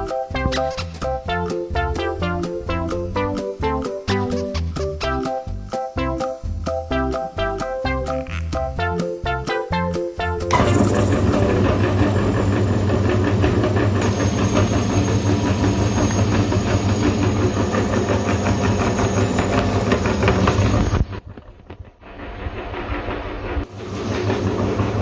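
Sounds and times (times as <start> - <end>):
electric meat grinder running: 10.5 - 21.2, 22.2 - 25.0.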